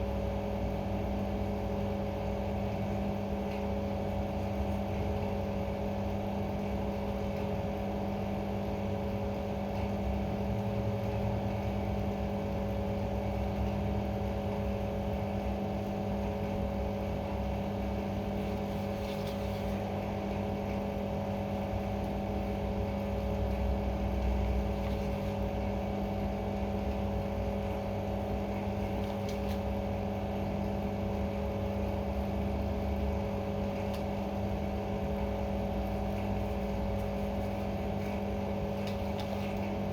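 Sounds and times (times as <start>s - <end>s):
machine hum: 15.2s - 39.9s.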